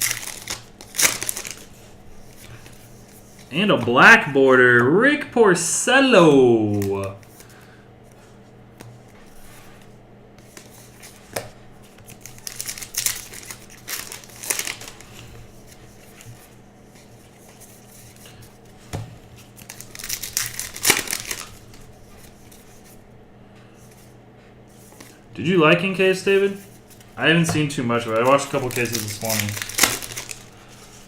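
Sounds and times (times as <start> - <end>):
wrapper crinkling and tearing: 0.0 - 1.8, 12.0 - 15.2, 19.5 - 21.9, 28.0 - 31.0.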